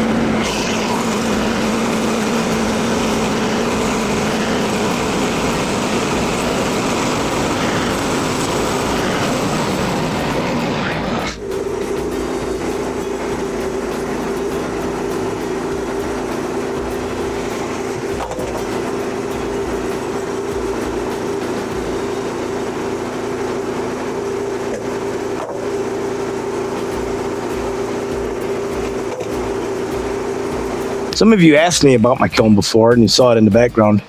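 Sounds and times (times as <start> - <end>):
motor humming: 0.0 - 31.9.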